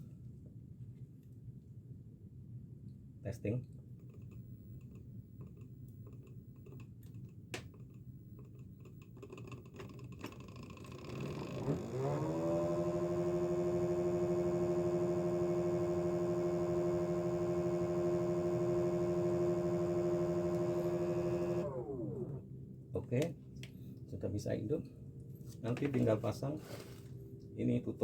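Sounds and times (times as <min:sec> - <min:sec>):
electric motor whine: 0:11.0 - 0:22.4.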